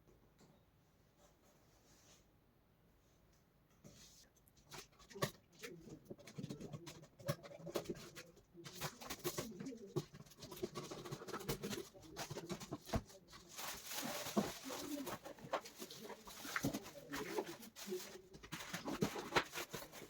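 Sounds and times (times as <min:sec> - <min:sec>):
plastic packaging crinkling and tearing: 0:10.6 - 0:20.0.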